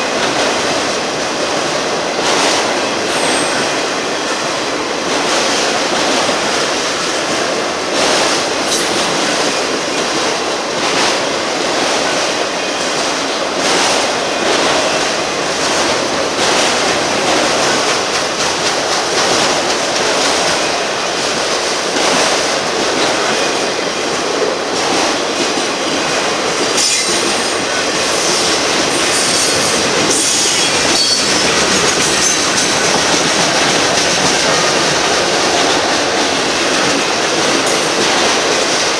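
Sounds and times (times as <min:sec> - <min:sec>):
freight train cars rumbling: 0:00.0 - 0:38.9
wheels clattering over rail joints: 0:00.0 - 0:38.9
high wheel squeal: 0:26.8 - 0:32.7.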